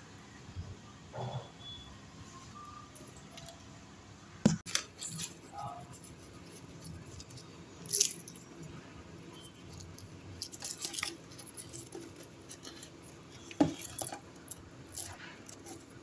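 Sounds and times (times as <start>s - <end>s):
utensils and dishes clinking: 4.7s - 16.0s.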